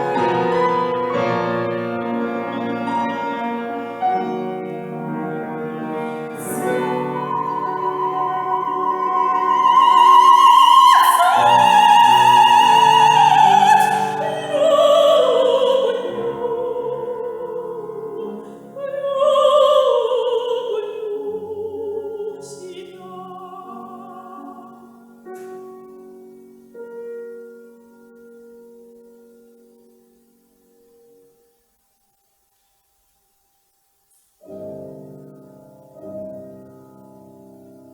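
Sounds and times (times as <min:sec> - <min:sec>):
piano accompaniment: 0:00.0 - 0:31.5, 0:34.4 - 0:37.9
operatic soprano singing: 0:05.2 - 0:25.0.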